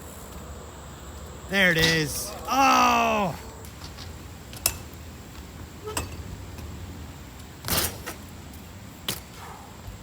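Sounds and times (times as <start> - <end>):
bikes knocking on ramps: 3.6 - 10.0
bike scraping on ramp: 7.6 - 8.4.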